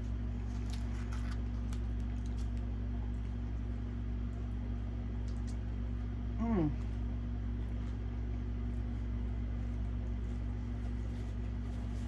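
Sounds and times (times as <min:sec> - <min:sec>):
low electrical hum: 0:00.0 - 0:12.0
chewing food: 0:00.4 - 0:04.5.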